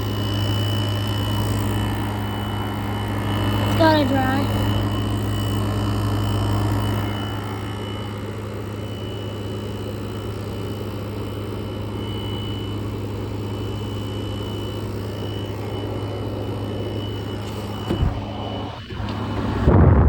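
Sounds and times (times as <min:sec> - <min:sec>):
window air conditioner running: 0:00.0 - 0:20.0.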